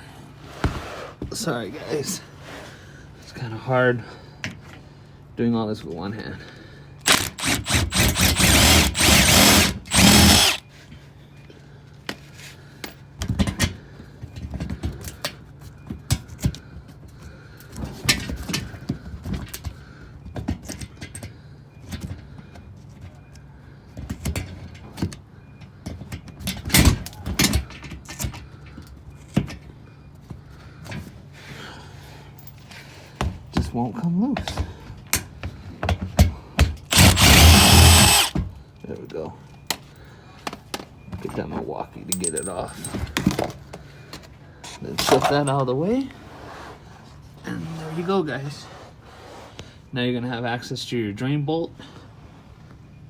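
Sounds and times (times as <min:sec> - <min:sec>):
tools and metal clicking and knocking: 0:07.0 - 0:10.6, 0:36.8 - 0:38.4, 0:42.1 - 0:43.6, 0:45.0 - 0:45.7
cordless power tool spinning: 0:07.1 - 0:10.6, 0:36.9 - 0:38.4.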